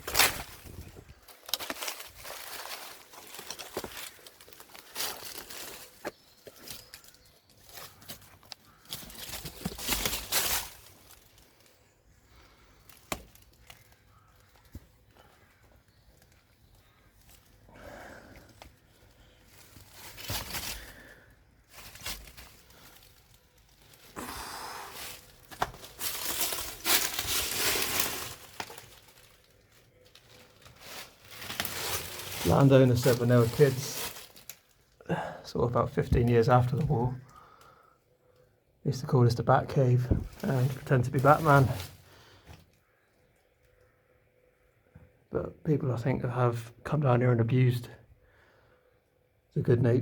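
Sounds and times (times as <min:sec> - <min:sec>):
twigs snapping: 0:00.0 - 0:11.6, 0:12.7 - 0:17.6, 0:25.0 - 0:34.8
brush rustling: 0:00.0 - 0:11.8, 0:19.2 - 0:34.8, 0:40.2 - 0:42.5
footsteps through undergrowth: 0:00.0 - 0:18.0, 0:18.7 - 0:34.8, 0:40.1 - 0:42.6.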